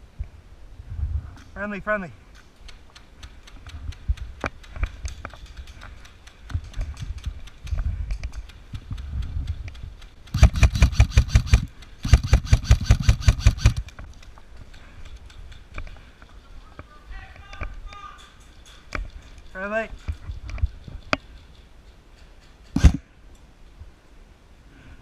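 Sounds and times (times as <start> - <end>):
airsoft gun firing full-auto bursts: 10.3 - 13.9.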